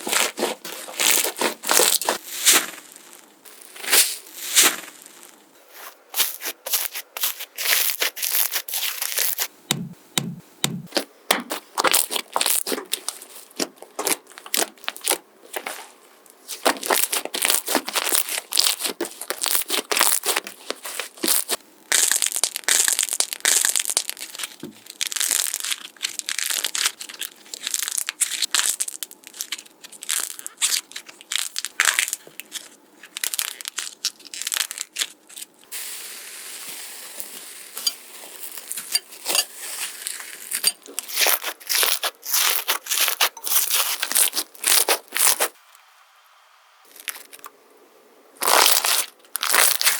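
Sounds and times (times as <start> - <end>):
slime crackling and popping: 6.2 - 15.2, 16.6 - 35.5, 40.0 - 45.6, 48.4 - 49.9.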